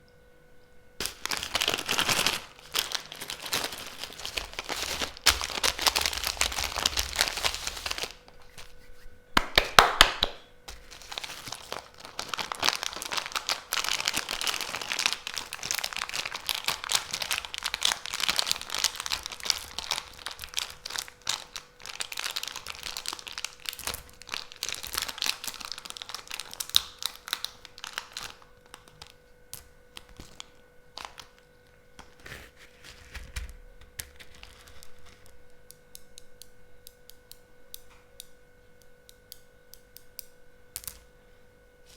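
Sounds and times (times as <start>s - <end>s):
candy wrappers crinkling: 1.0s - 9.0s, 10.2s - 36.4s.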